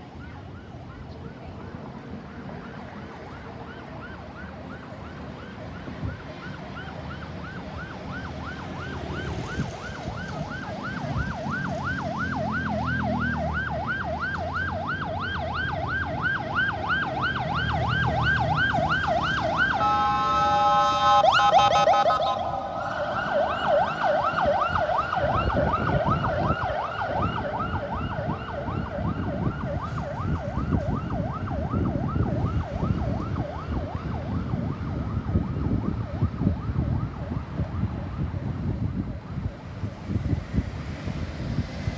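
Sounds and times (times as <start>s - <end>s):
road traffic: 0.0s - 41.9s
ambulance siren yelping: 2.4s - 41.9s.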